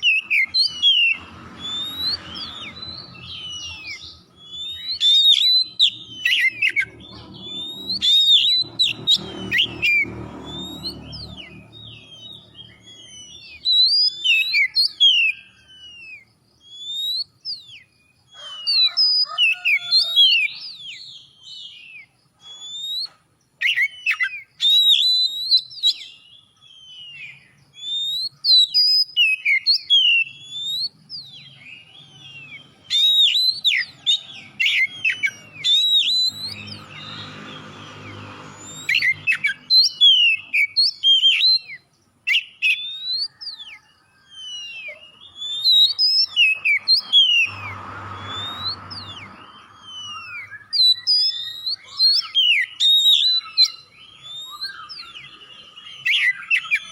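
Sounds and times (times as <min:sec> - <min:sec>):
songbird singing whistled song: 0:00.0 - 0:56.9.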